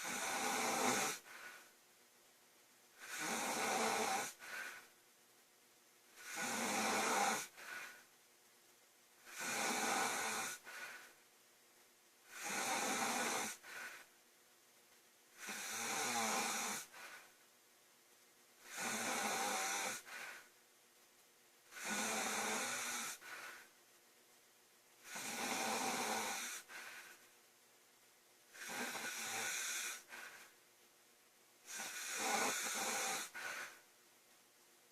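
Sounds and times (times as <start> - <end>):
woman snoring: 0.0 - 1.7, 3.0 - 4.9, 6.2 - 8.0, 9.2 - 11.2, 12.3 - 14.1, 15.4 - 17.3, 18.6 - 20.5, 21.7 - 23.7, 25.0 - 27.2, 28.5 - 30.5, 31.7 - 33.8.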